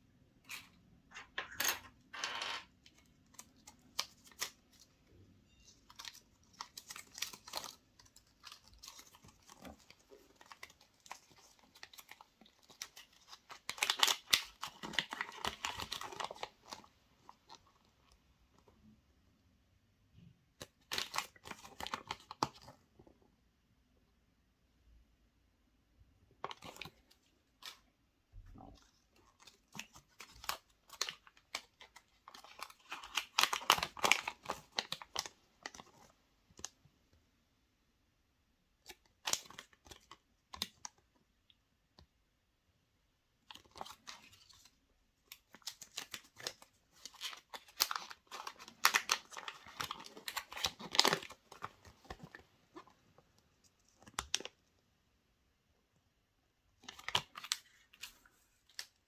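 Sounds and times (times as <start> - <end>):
foil wrapper crinkling and tearing: 5.7 - 16.9, 29.3 - 36.1, 45.4 - 52.4
chocolate cracking: 5.8 - 16.9, 28.6 - 36.0, 45.3 - 53.0.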